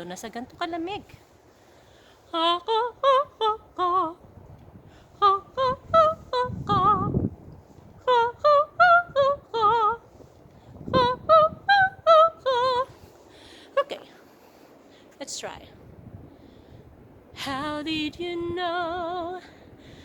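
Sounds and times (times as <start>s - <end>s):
woman singing vocal warm-up: 2.2s - 4.3s, 5.2s - 7.2s, 8.0s - 10.0s, 10.8s - 13.1s, 13.7s - 14.2s, 17.4s - 19.7s.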